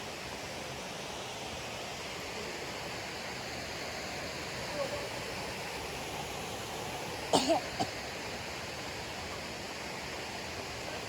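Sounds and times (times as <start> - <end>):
waterfall rushing: 0.0 - 11.0
person coughing: 7.4 - 7.9.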